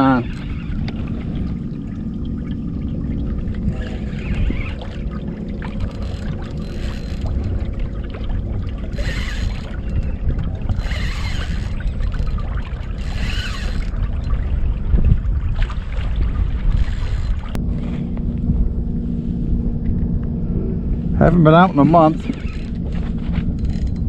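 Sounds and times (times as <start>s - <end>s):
water splashing: 0.0s - 17.6s
wind rumbling on microphone: 0.0s - 24.0s.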